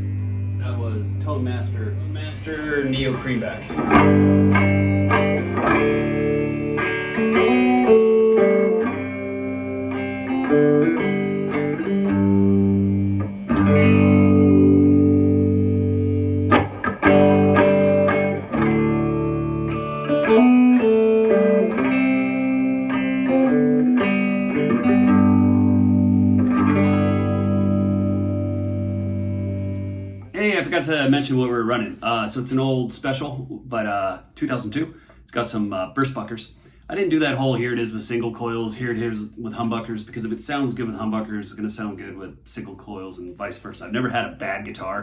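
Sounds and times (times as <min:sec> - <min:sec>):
electric guitar strumming and picking: 0:00.0 - 0:30.3.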